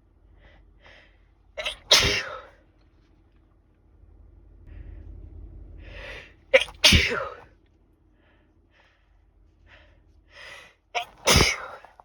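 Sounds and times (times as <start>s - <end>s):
long noisy in-breath: 0.2s - 1.4s, 4.6s - 6.4s, 8.1s - 10.8s
person sneezing: 1.6s - 2.6s, 6.6s - 7.4s, 11.0s - 12.0s
catching breaths: 8.1s - 10.9s.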